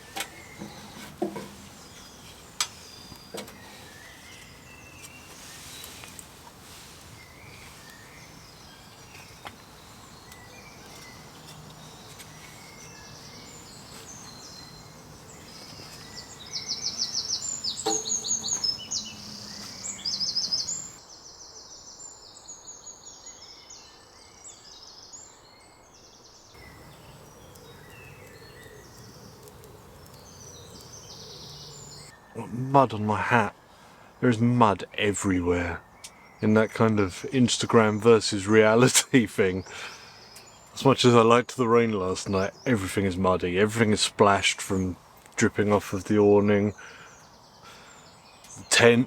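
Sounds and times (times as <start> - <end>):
songbirds singing: 0.0 - 49.0
bird trilling: 7.2 - 21.0.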